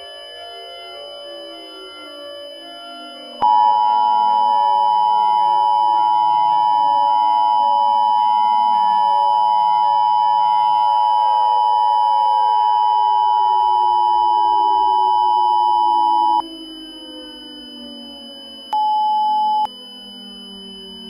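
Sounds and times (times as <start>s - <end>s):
short beep: 18.8s - 19.7s.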